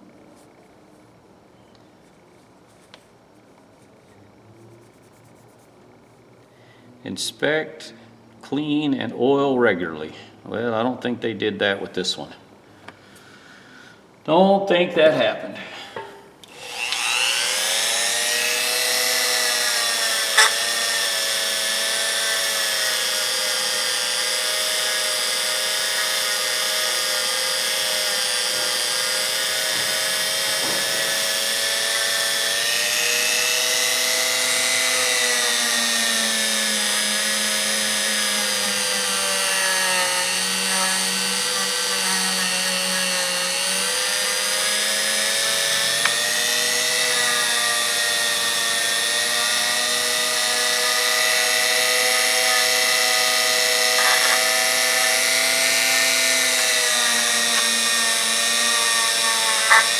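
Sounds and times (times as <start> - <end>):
small power tool motor running: 16.5 - 59.9.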